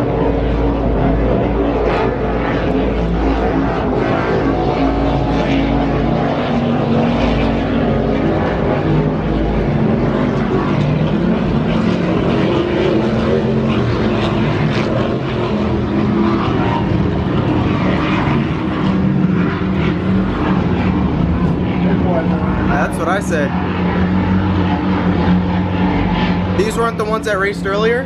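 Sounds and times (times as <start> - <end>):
powerboat engines droning: 0.0 - 28.0.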